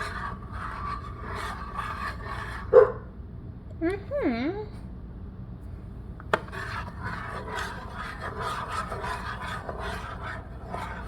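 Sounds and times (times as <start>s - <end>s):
utensil scraping slime in bowl: 0.0s - 2.8s, 6.2s - 11.0s.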